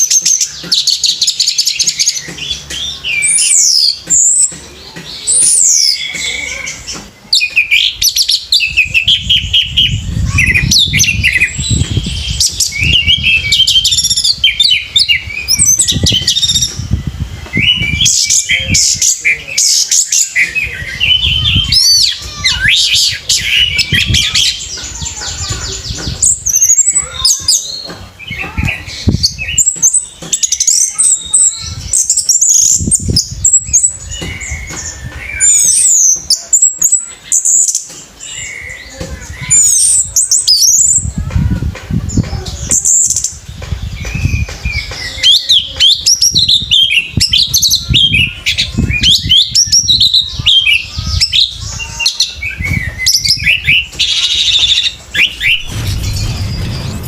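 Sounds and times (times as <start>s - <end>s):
low thumps: 9.9s - 18.8s, 54.9s - 57.0s.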